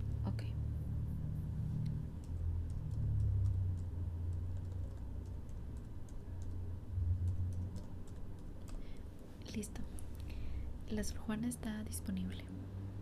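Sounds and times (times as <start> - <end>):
keyboard typing: 2.2 - 6.6, 7.3 - 8.8.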